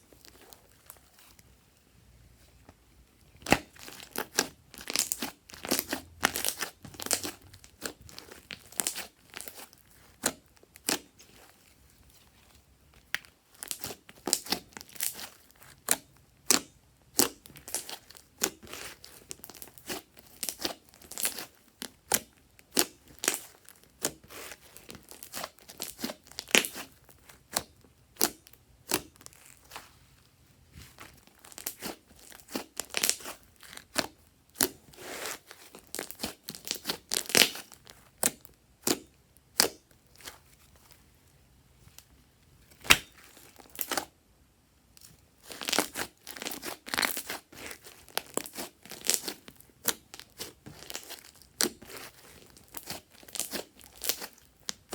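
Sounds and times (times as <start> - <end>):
slime squishing crackles and pops: 3.4 - 11.1, 13.1 - 29.5, 31.3 - 34.9, 35.8 - 39.9, 45.4 - 54.9.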